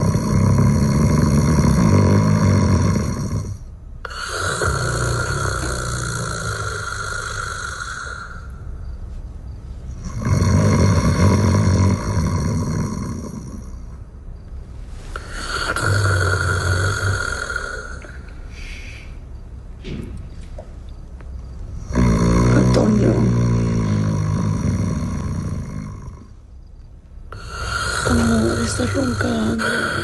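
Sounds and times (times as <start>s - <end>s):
person snoring: 0.0s - 8.6s, 10.0s - 14.0s, 15.1s - 18.2s, 21.8s - 26.4s, 27.3s - 30.0s.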